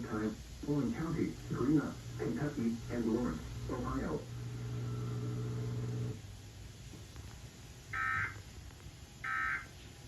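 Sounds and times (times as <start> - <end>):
buzzy data tone bursts: 0.0 - 6.2, 7.9 - 8.4
steady low buzz: 0.0 - 6.7.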